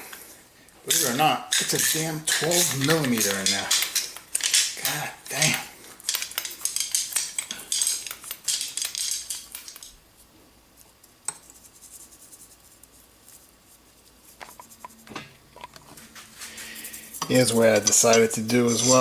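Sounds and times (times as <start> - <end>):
metal parts clinking and scraping: 0.9 - 10.0, 17.2 - 19.0.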